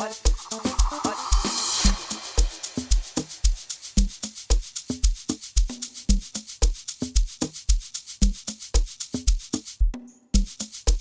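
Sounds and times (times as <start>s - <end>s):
electronic dance music: 0.0s - 3.6s
pitched percussion hits: 0.0s - 4.2s
shaker ticks: 0.0s - 11.0s
kick drum: 5.0s - 11.0s.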